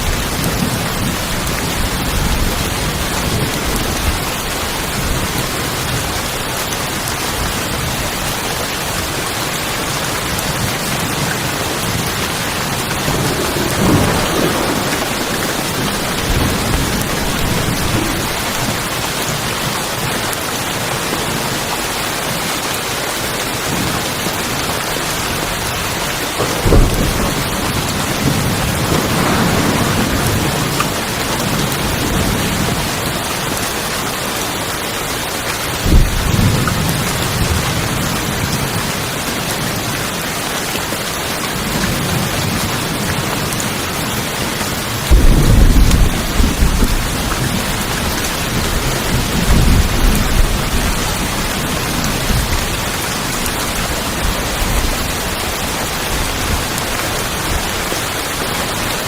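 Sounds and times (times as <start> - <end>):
rain on a tin roof: 0.0 - 59.0
thunder rumbling: 9.8 - 19.0, 26.3 - 33.2, 35.8 - 38.9, 41.6 - 58.9.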